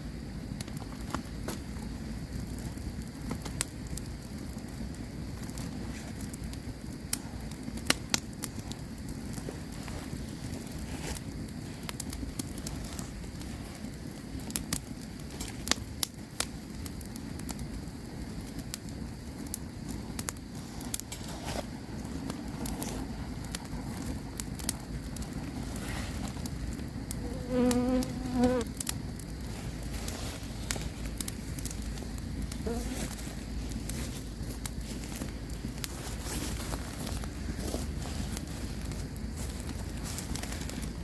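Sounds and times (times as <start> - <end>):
campfire crackling and popping: 0.0 - 41.0
steady low rumble: 28.7 - 41.0.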